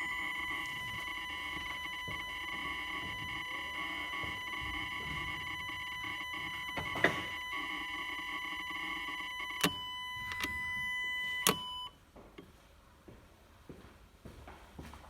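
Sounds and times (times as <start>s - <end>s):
fuel pump whining: 0.0s - 11.9s
sharp clicks: 11.4s - 11.9s.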